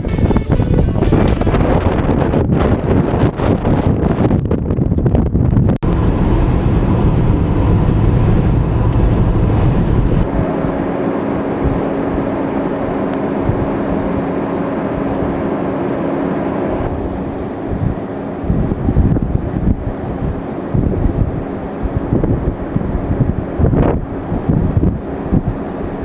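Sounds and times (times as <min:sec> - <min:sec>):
road and wind noise: 0:00.0 - 0:26.0
steady low hum: 0:05.8 - 0:26.0.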